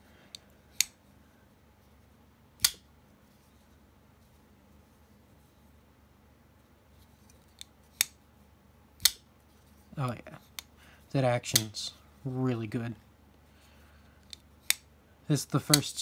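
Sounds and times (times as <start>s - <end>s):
folding knife blade snapping: 2.6s - 2.8s, 9.0s - 9.2s.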